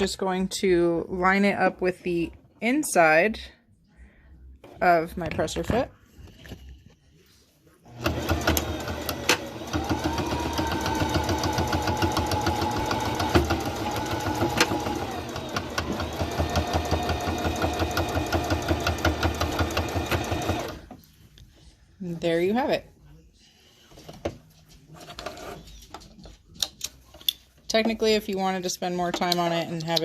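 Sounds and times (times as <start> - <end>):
sewing machine stitching: 7.9 - 20.9.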